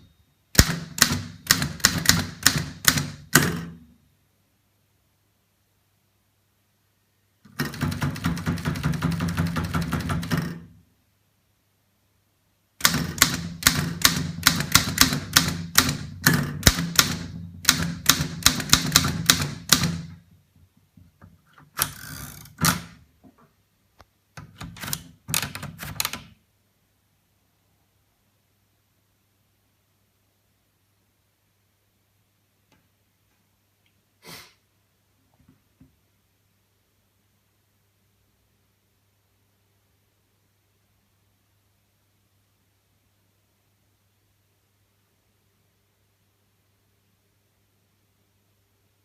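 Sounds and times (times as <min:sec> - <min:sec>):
typewriter key clacks: 0:07.5 - 0:10.7, 0:12.8 - 0:20.2, 0:24.4 - 0:26.4.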